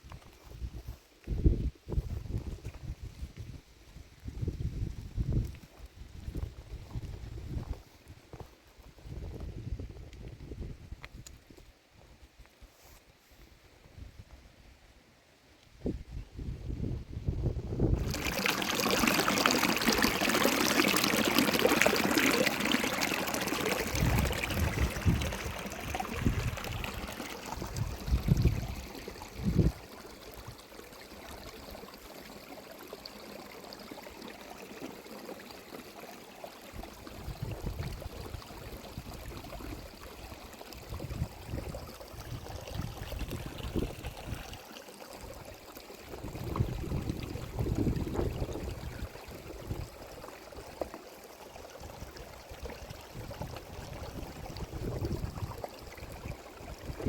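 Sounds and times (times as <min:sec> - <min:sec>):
water rushing: 0:18.0 - 0:57.0.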